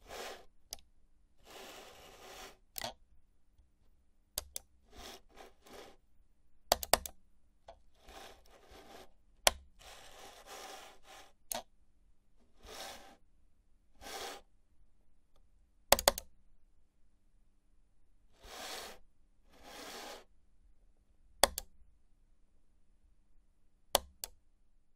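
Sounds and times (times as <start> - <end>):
mouse rubbing on desk: 0.0 - 0.5, 1.4 - 2.7, 4.9 - 6.0, 8.0 - 11.4, 12.5 - 13.2, 14.0 - 14.5, 18.4 - 20.3.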